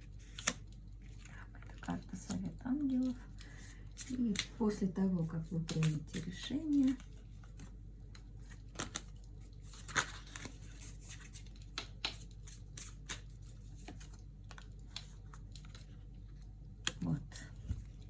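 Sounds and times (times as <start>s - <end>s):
cards clicking and rustling: 0.1s - 1.3s, 3.3s - 4.6s, 5.5s - 15.9s.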